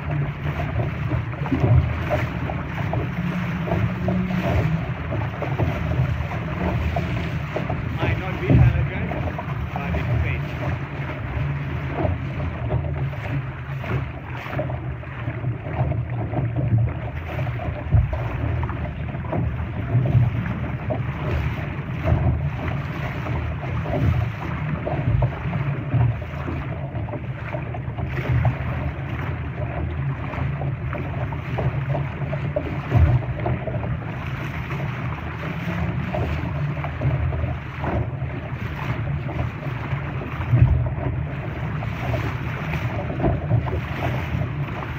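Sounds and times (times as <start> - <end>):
water rushing and splashing: 0.0 - 44.9
wind buffeting microphone: 0.0 - 44.9
dull thumps: 0.1 - 10.9.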